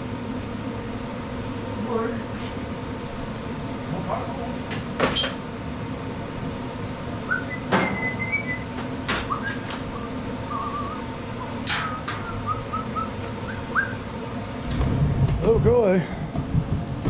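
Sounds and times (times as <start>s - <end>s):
steady background hum: 0.0s - 17.0s
clicks and knocks of handled parts: 11.6s - 12.2s.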